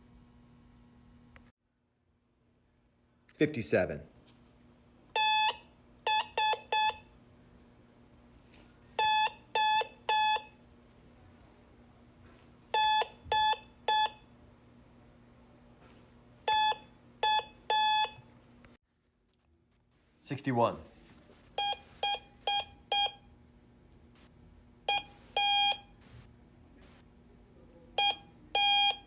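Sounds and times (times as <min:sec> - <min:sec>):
morse code beeps: 0:05.2 - 0:07.1, 0:09.0 - 0:10.5, 0:12.8 - 0:14.2, 0:16.5 - 0:18.2, 0:21.6 - 0:23.2, 0:24.9 - 0:25.9, 0:28.0 - 0:29.0.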